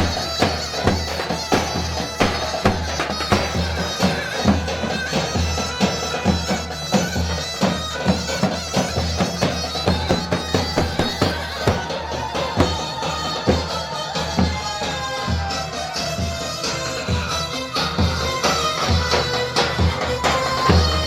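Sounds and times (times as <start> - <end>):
steady drum beat: 0.0 - 15.6
shrill reedy wind instrument: 0.0 - 21.0.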